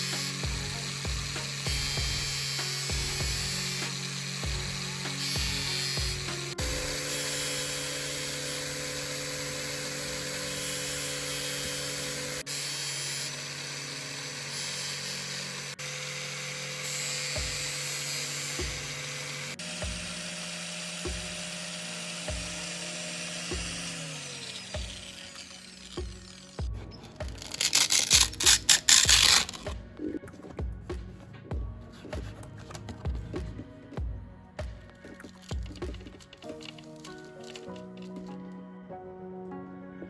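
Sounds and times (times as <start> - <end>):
power tool grinding drill bit: 0.0 - 29.8
background music with steady beat: 0.0 - 40.0.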